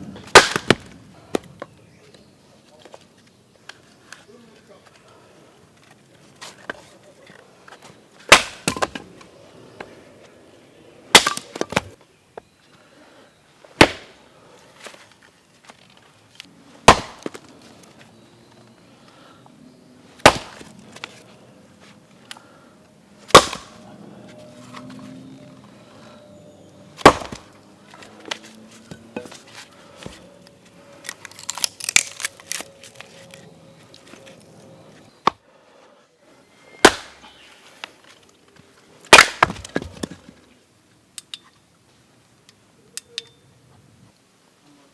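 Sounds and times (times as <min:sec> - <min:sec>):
hatchet chopping firewood: 0:00.2 - 0:01.7, 0:08.2 - 0:09.2, 0:11.1 - 0:12.0, 0:13.8 - 0:14.2, 0:16.8 - 0:17.8, 0:20.2 - 0:21.2, 0:23.2 - 0:23.9, 0:26.4 - 0:34.4, 0:36.7 - 0:37.4, 0:39.0 - 0:40.4.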